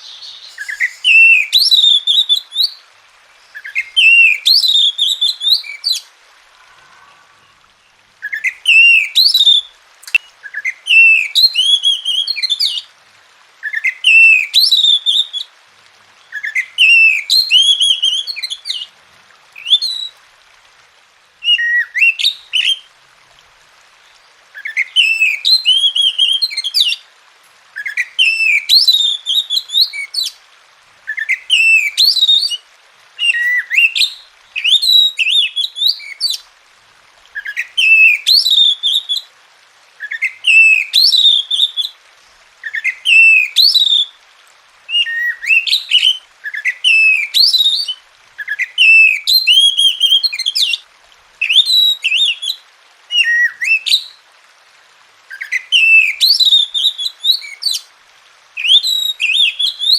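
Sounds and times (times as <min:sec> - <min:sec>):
bird singing whistled phrases: 0:00.0 - 0:02.8, 0:03.5 - 0:07.6, 0:08.2 - 0:12.8, 0:13.6 - 0:15.4, 0:16.3 - 0:18.9, 0:19.6 - 0:20.2, 0:24.6 - 0:27.0, 0:27.8 - 0:30.3, 0:31.1 - 0:32.6, 0:33.2 - 0:36.4, 0:37.4 - 0:39.3, 0:40.0 - 0:41.9, 0:42.6 - 0:44.1, 0:44.9 - 0:50.8, 0:51.4 - 0:54.2, 0:55.3 - 0:57.8, 0:58.6 - 0:59.9.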